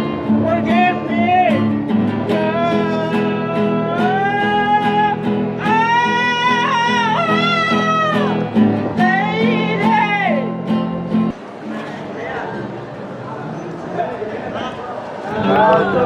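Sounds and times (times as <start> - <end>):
strummed acoustic guitar: 0.0 - 12.7.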